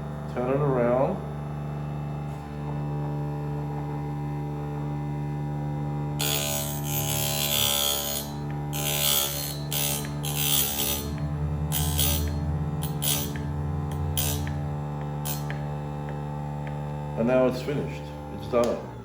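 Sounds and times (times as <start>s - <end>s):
rough grinding rasps: 6.2s - 16.2s
drill bit sharpener humming: 6.2s - 17.2s.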